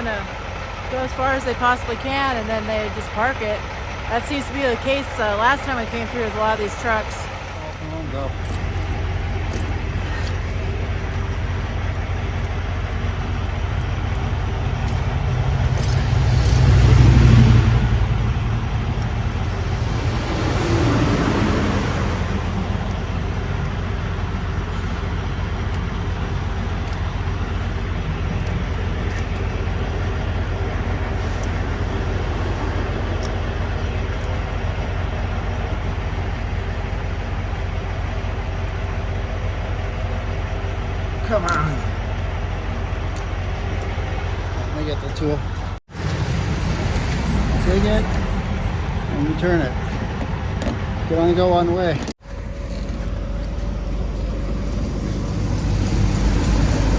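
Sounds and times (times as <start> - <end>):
highway traffic rumble: 0.0 - 56.9
vehicles passing: 0.0 - 56.9.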